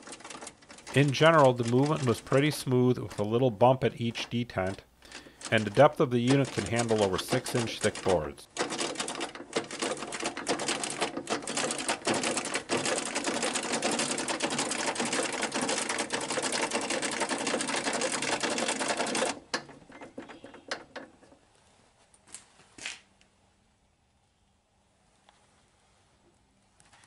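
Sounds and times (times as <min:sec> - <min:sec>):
crank mechanism clicking: 0:00.0 - 0:21.4.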